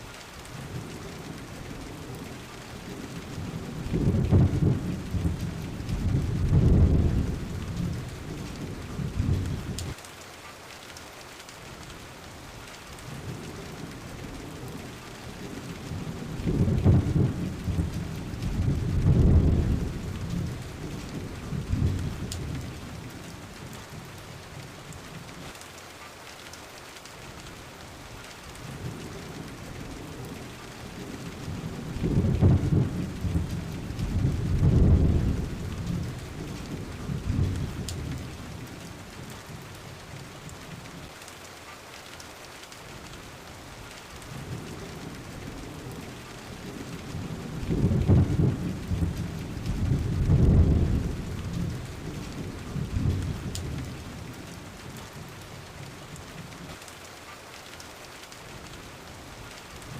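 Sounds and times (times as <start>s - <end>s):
steady rain: 0.0s - 59.9s
rolling thunder: 0.7s - 10.0s, 14.0s - 23.7s, 31.0s - 39.7s, 44.2s - 54.3s.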